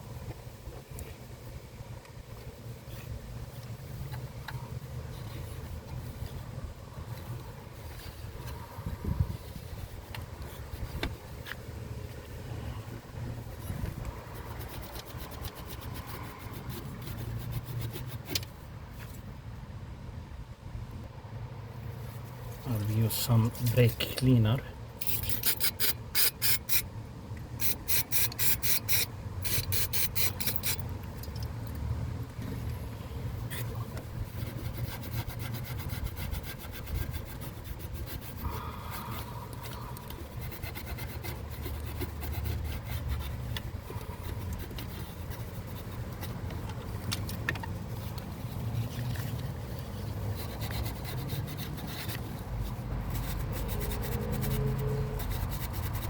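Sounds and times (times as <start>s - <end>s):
hand scrubbing engine parts: 12.9s - 19.1s, 22.0s - 26.8s, 27.5s - 31.4s, 32.6s - 56.0s.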